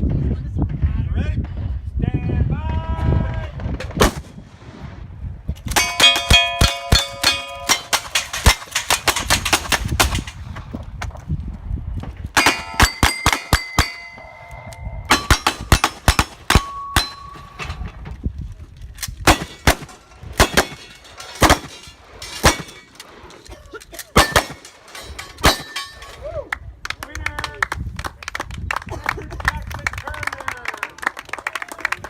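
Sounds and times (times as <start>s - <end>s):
steel targets clanging: 5.7s - 10.4s, 12.4s - 14.5s, 15.1s - 18.0s, 19.3s - 23.4s, 24.1s - 26.2s.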